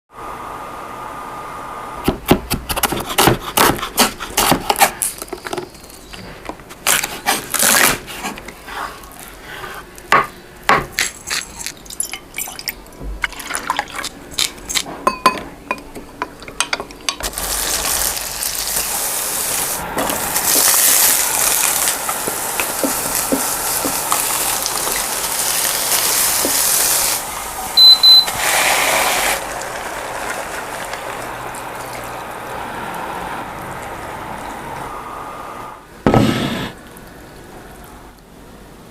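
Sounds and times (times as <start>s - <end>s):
food sizzling in a hot pan: 17.2s - 31.4s.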